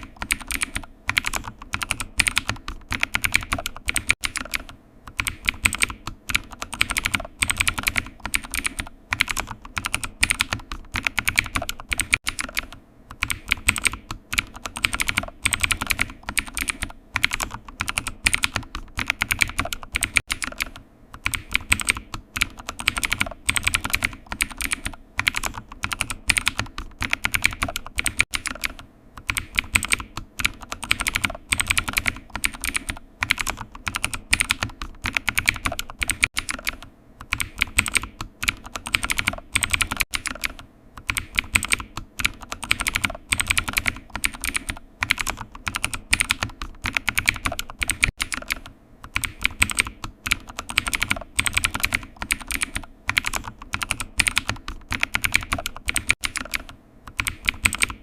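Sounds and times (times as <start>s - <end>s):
keyboard typing: 0.0s - 58.0s.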